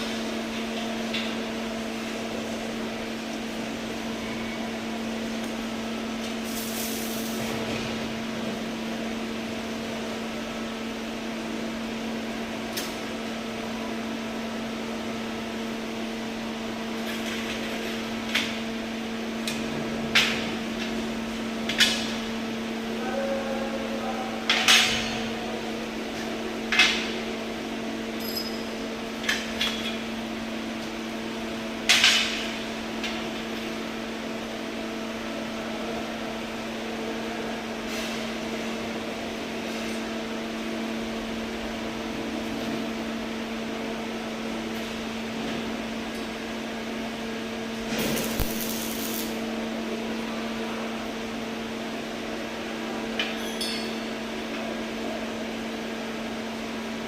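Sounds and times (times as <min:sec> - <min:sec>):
welding machine humming: 0:46.0 - 0:50.2.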